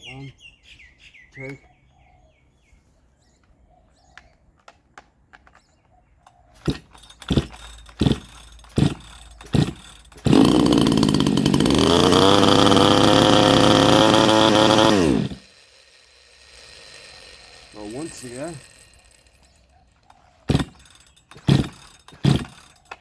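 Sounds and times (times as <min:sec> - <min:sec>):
chainsaw pull-start pops: 0:04.2 - 0:23.0
chainsaw engine running: 0:06.6 - 0:23.0.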